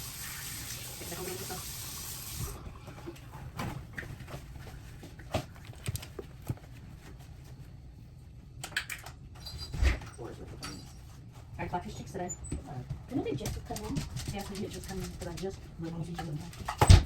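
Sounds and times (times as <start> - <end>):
kitchen tap running: 0.0 - 3.2.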